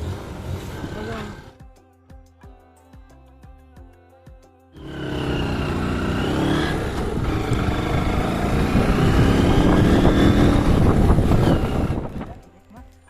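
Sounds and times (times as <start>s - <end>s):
vehicle engine running: 0.0s - 1.6s, 4.8s - 12.4s.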